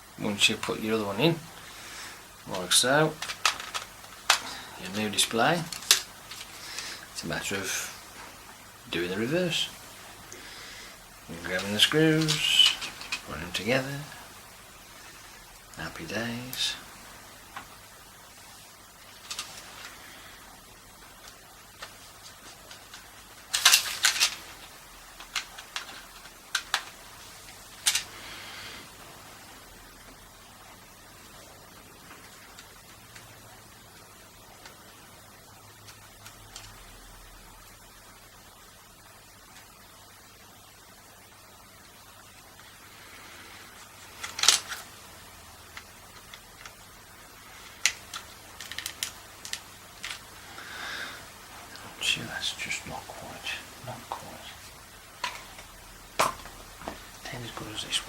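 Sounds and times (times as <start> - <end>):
plastic and metal parts clicking: 3.2 - 4.6, 5.7 - 6.6, 22.7 - 24.4, 25.2 - 27.0, 27.8 - 28.1, 44.2 - 44.9, 47.8 - 50.3.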